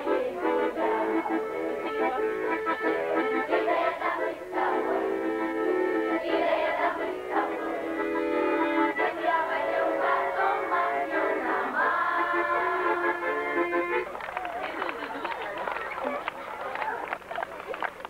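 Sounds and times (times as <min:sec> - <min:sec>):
voices singing: 0:00.0 - 0:14.1
accordion: 0:00.0 - 0:17.8.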